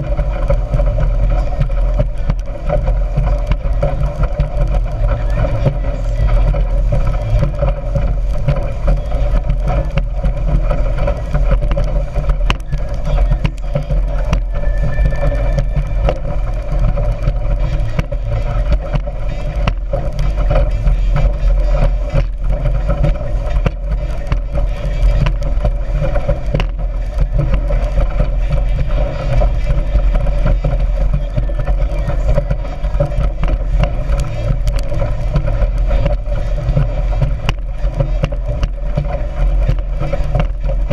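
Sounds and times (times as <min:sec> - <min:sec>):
motorboat engine drone: 0:00.0 - 0:40.9
rushing water noise: 0:00.0 - 0:40.9.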